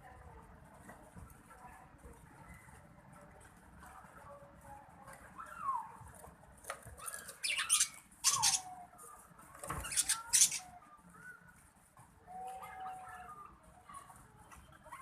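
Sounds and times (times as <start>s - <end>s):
lovebirds harsh screeching: 7.1s - 8.7s, 9.8s - 10.7s.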